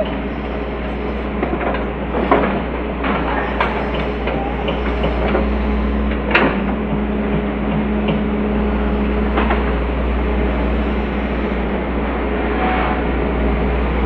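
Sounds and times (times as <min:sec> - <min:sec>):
excavator diesel engine running: 0:00.0 - 0:14.0.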